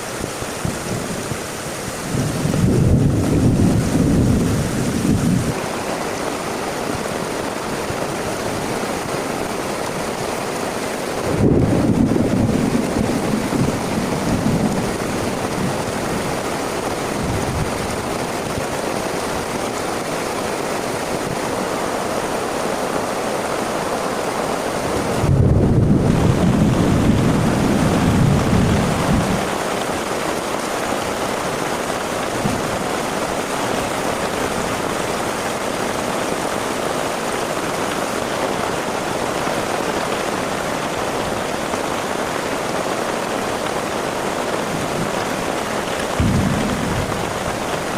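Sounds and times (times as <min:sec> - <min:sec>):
heavy rain falling: 0:00.0 - 0:47.9
low rumble of thunder: 0:02.1 - 0:05.6, 0:11.2 - 0:16.4, 0:25.0 - 0:29.6, 0:46.0 - 0:47.9.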